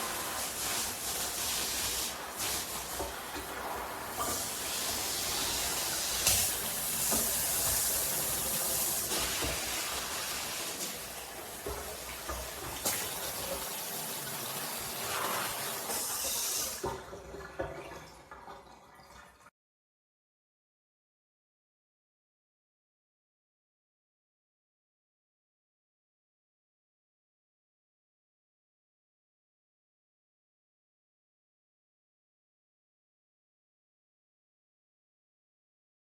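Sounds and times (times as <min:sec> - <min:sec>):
water spraying from hose: 0:00.0 - 0:16.9.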